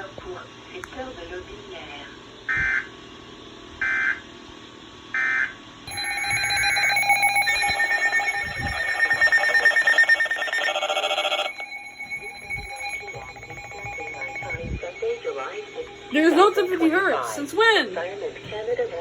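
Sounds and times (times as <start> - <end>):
digital data bursts: 5.9 - 17.8
rapidly pulsing alert signal: 5.9 - 17.8.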